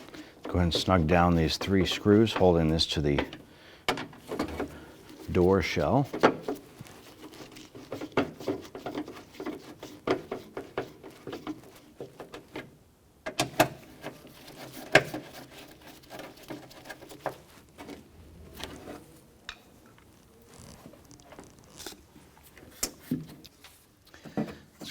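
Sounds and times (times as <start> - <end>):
hand tool tightening screws: 0.0 - 12.7.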